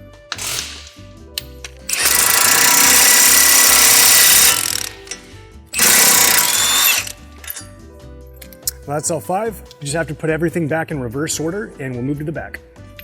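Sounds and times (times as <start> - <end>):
background music: 0.0 - 13.0
impact wrench hammering: 0.3 - 1.0, 1.9 - 7.5.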